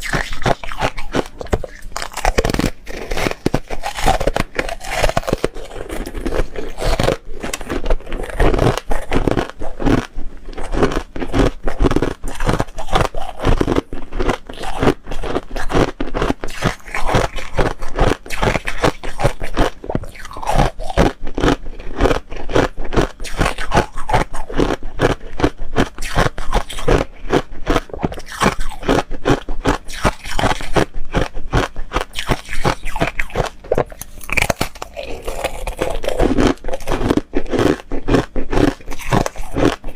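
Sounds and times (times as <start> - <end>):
crisp chewing crunches: 0.0 - 39.9.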